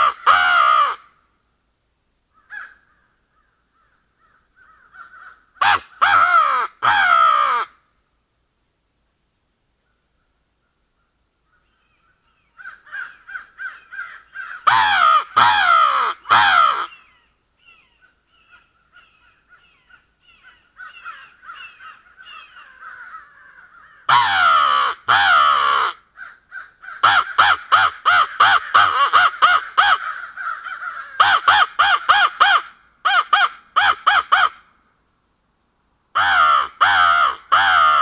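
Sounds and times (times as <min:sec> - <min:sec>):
crow call cawing: 0:00.0 - 0:01.2, 0:02.3 - 0:07.8, 0:12.5 - 0:17.3, 0:17.9 - 0:34.7, 0:36.2 - 0:38.0
distant crows cawing: 0:00.0 - 0:01.2, 0:02.3 - 0:07.9, 0:12.4 - 0:34.7, 0:36.2 - 0:38.0.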